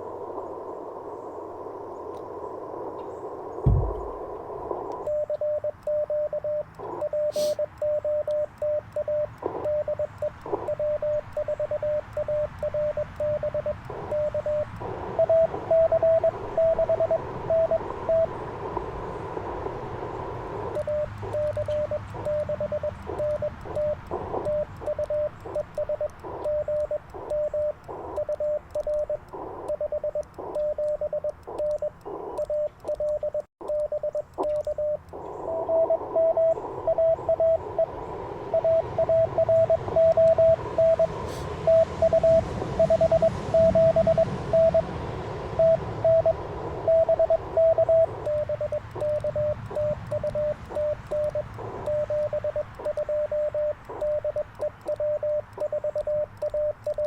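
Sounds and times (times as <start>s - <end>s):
receiver hiss: 0.0s - 57.0s
morse code tone: 3.7s - 18.8s, 20.2s - 57.0s.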